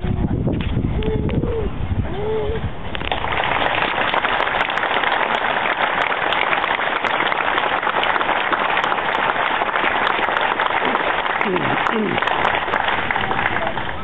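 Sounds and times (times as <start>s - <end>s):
crowd applauding: 2.9s - 14.0s.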